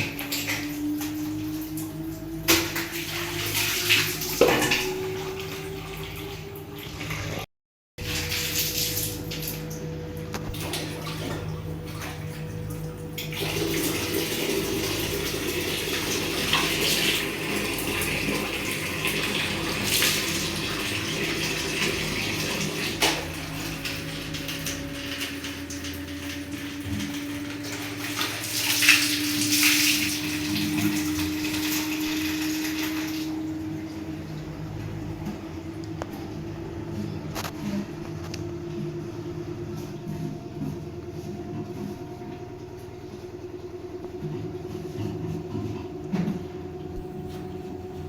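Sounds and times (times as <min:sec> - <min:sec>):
water running from tap: 0:00.0 - 0:07.4, 0:08.0 - 0:09.9, 0:10.5 - 0:34.3.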